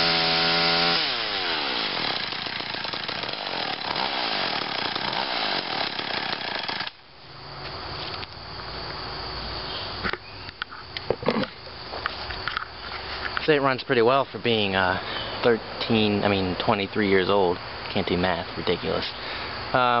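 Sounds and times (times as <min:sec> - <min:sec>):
chainsaw cutting wood: 0:00.0 - 0:07.1.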